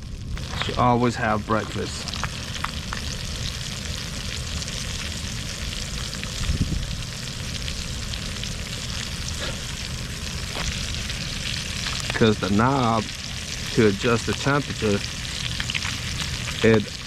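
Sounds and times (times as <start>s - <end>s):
fish sizzling in a pan: 0.0s - 17.0s
low rumble: 0.0s - 17.0s.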